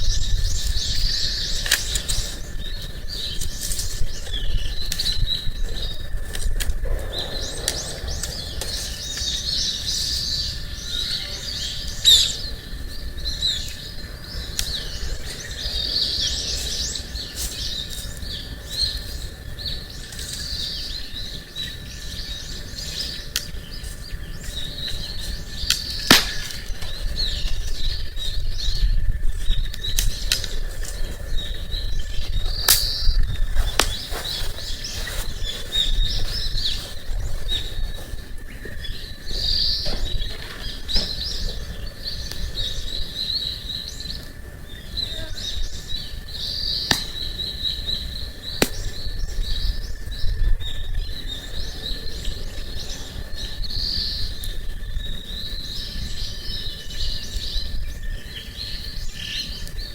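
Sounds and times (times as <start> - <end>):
campfire popping and crackling: 0.0 - 10.0, 22.5 - 43.4, 46.2 - 50.4
small birds chirping: 0.0 - 59.9.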